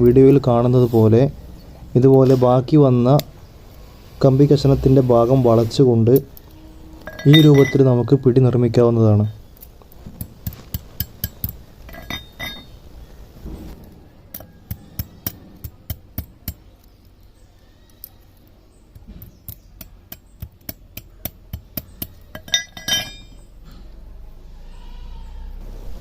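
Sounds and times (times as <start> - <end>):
metallic taps and clinks on wire: 6.2 - 7.9, 9.6 - 12.8, 18.0 - 23.5
ringing metal clink: 6.9 - 8.3, 11.0 - 12.8, 21.2 - 23.5.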